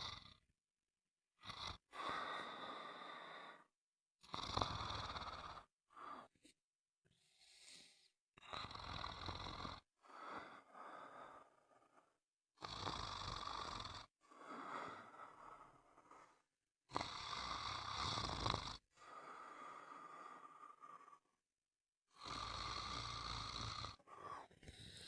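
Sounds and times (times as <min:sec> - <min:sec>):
rasping snore: 0:00.0 - 0:00.4, 0:01.4 - 0:06.3, 0:08.4 - 0:10.6, 0:11.3 - 0:21.3, 0:22.1 - 0:25.0
soft snore: 0:00.0 - 0:00.4, 0:01.4 - 0:06.3, 0:07.2 - 0:10.6, 0:11.3 - 0:21.3, 0:22.1 - 0:25.0.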